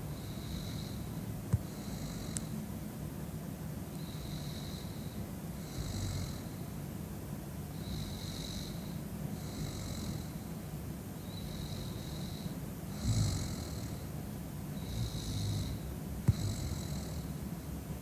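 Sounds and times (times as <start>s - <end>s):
woman snoring: 12.9s - 14.1s, 14.8s - 17.4s.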